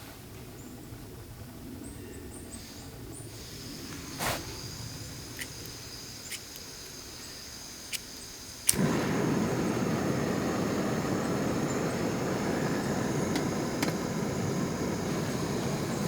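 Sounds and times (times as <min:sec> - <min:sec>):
insects trilling: 0:02.7 - 0:16.0
sharp click: 0:05.4 - 0:07.0, 0:07.9 - 0:08.9.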